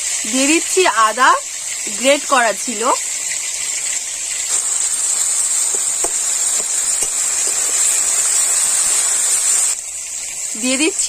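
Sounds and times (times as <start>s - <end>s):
spices sizzling in hot oil: 0.0s - 11.0s.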